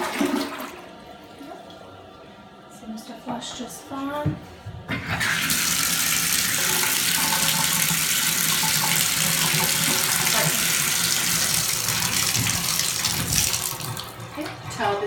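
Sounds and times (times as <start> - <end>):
water splashing into bathtub: 4.9 - 15.0.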